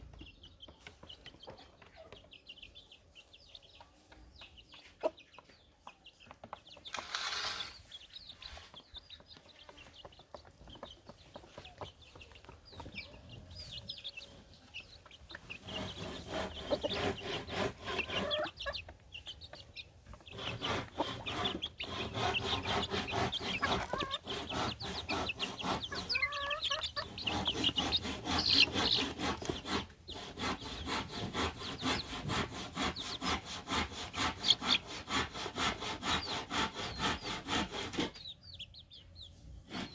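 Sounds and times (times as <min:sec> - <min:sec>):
chickens clucking: 0:00.0 - 0:39.9
hand tool rasping wood: 0:06.9 - 0:07.8, 0:15.4 - 0:18.7, 0:20.1 - 0:38.3, 0:39.7 - 0:39.9.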